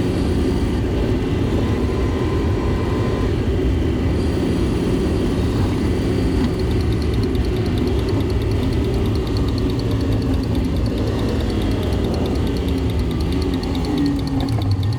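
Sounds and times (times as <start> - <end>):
heavy vehicle engine rumbling: 0.8 - 14.9
fast even ticking: 6.2 - 14.9.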